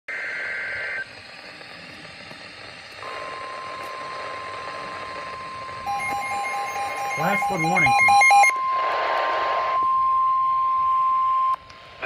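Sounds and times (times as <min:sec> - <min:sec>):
radio static hiss: 0:00.1 - 0:10.0
steady alarm tone: 0:03.0 - 0:11.6.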